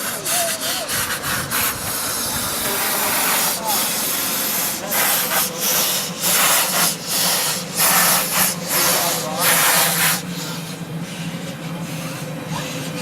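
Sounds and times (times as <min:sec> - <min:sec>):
steady steam hiss: 0:00.0 - 0:13.0
steam locomotive chuffing: 0:00.0 - 0:13.0.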